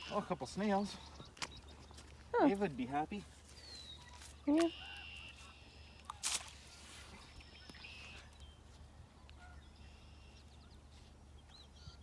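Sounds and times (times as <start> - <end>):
low outdoor hum: 0.0 - 12.0
birds whistling faintly: 3.5 - 6.2, 7.2 - 12.0.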